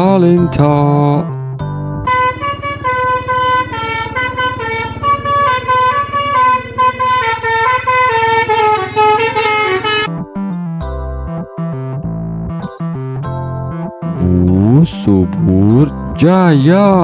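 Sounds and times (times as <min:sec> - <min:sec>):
electric keyboard music: 0:00.0 - 0:17.0
multi-tone bus horn melody: 0:02.0 - 0:10.3.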